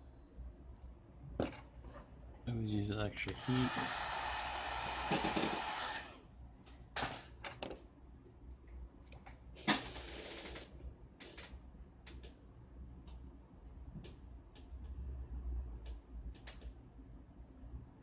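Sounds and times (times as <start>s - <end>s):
heat gun hissing: 3.3s - 6.2s.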